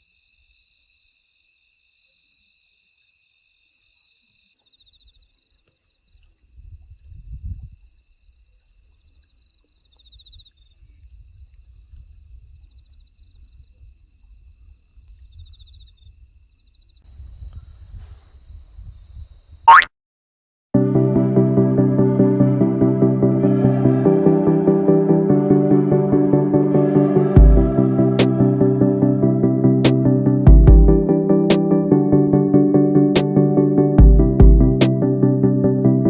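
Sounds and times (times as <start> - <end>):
low rumble: 25.9 - 31.1.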